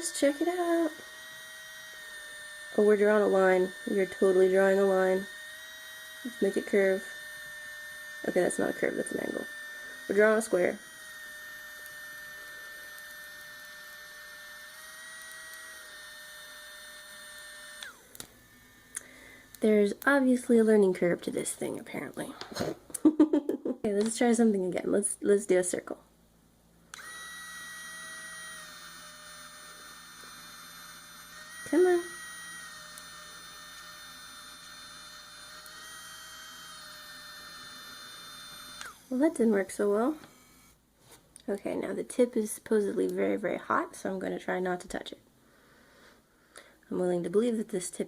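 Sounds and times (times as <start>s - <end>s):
small motor whine: 0.0s - 22.8s, 26.8s - 41.2s.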